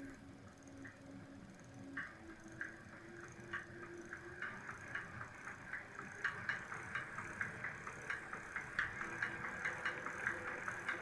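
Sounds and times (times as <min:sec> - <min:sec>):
rhythmic knocking clicks: 0:00.0 - 0:11.0.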